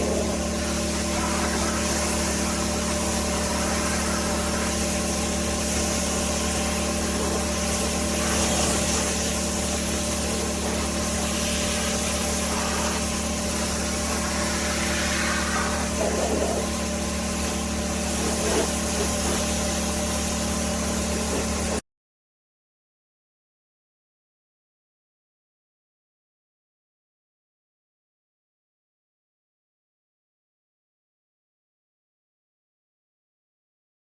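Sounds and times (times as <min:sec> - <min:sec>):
pressure washer running: 0:00.0 - 0:21.8.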